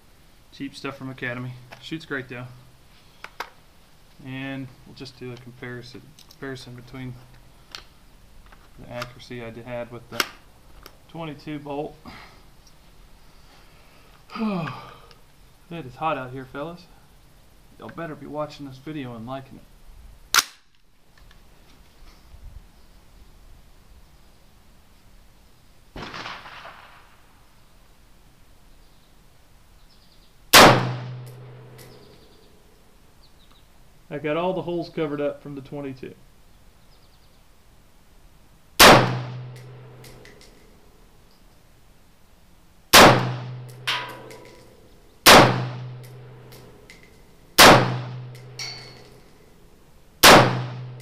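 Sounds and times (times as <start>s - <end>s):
loud gunshot: 26.0s - 27.2s, 30.5s - 31.4s, 38.8s - 39.9s, 42.9s - 44.2s, 45.2s - 46.0s, 47.6s - 48.4s, 50.2s - 51.0s
rifle shots: 26.0s - 27.2s, 30.5s - 31.8s, 38.8s - 40.4s, 42.9s - 46.7s, 47.6s - 49.2s, 50.2s - 51.0s
sharp metallic clank: 43.0s - 49.4s
metallic clink: 43.6s - 45.0s, 48.3s - 49.4s.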